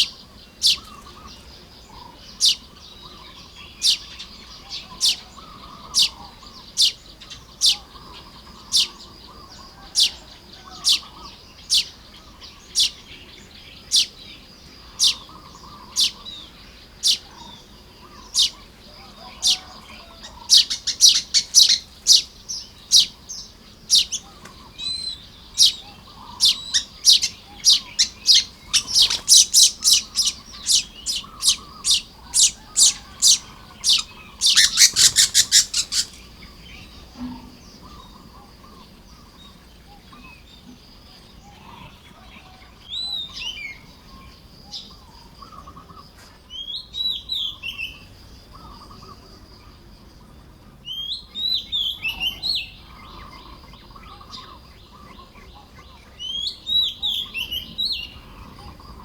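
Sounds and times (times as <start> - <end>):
soft low bird chatter: 0.0 - 59.0
sharp high bird chirps: 23.9 - 36.3.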